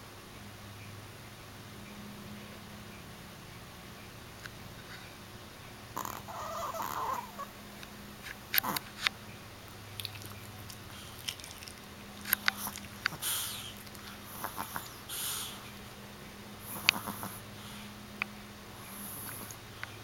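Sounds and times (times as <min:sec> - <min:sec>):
dog snoring: 0:06.0 - 0:07.6, 0:08.6 - 0:08.9, 0:12.5 - 0:15.8, 0:16.6 - 0:17.9, 0:18.8 - 0:19.6.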